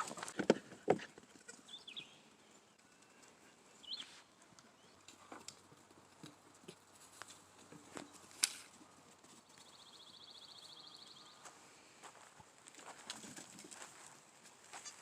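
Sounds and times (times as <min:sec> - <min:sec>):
bird chirps: 0:01.7 - 0:02.3, 0:03.8 - 0:04.2, 0:09.5 - 0:11.5.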